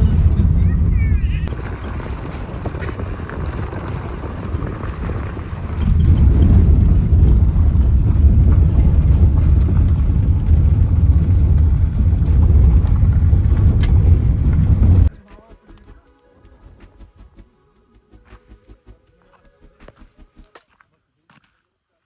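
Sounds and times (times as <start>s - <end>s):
vehicle rumbling: 0.0s - 15.1s.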